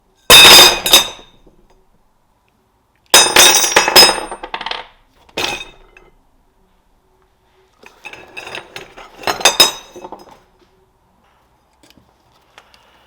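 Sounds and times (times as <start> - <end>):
metal pieces clanking: 0.3 - 1.4, 3.1 - 6.1, 7.9 - 10.4.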